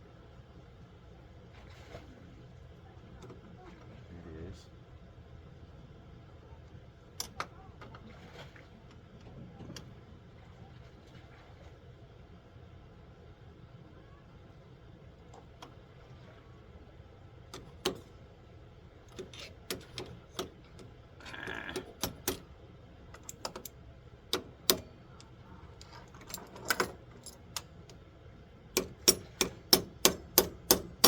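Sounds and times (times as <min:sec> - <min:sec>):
metal tool clicks and knocks: 0:19.1 - 0:20.9, 0:24.3 - 0:24.9, 0:25.8 - 0:28.0, 0:28.7 - 0:31.0.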